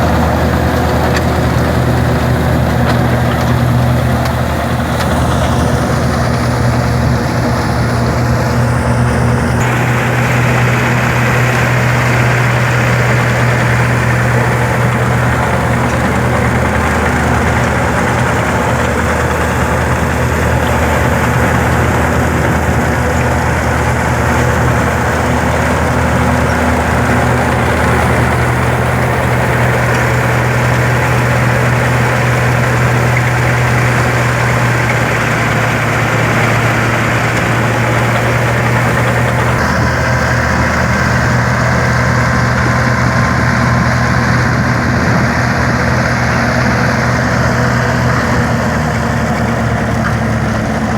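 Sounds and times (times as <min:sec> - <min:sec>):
straw chopper blower rushing: 0:00.0 - 0:50.9
tractor diesel engine hum: 0:00.0 - 0:50.9.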